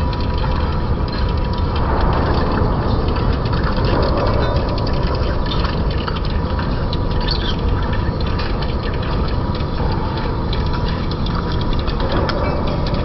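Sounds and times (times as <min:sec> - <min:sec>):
lathe rumble: 0:00.0 - 0:13.0.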